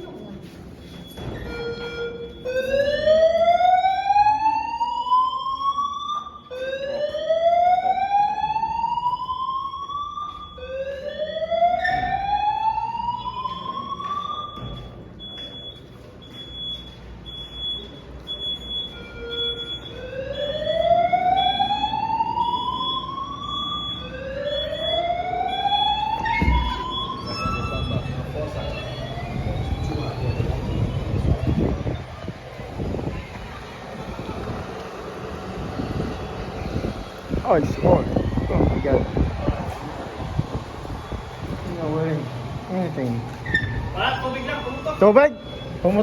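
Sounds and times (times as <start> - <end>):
fire alarm whoop tone: 1.0 - 15.8, 16.5 - 32.1, 37.6 - 39.5, 43.5 - 46.0
high pulsing beep: 14.3 - 20.6, 25.6 - 31.6, 44.3 - 46.0.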